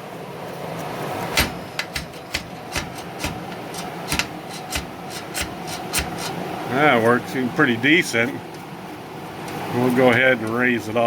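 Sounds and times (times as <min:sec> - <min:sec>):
sharp clicks and knocks of parts: 0:01.2 - 0:06.4.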